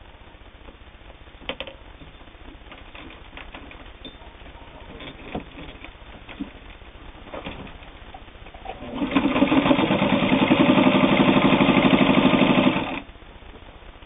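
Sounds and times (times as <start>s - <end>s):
sewing machine humming: 8.6s - 13.1s
sewing machine clicks: 8.7s - 13.0s.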